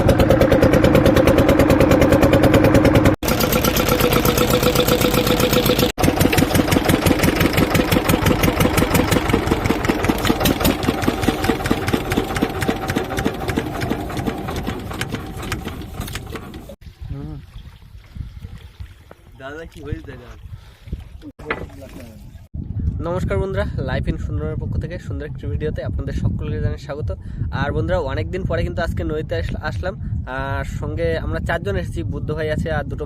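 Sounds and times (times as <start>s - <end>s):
boat engine chugging: 0.0s - 16.8s.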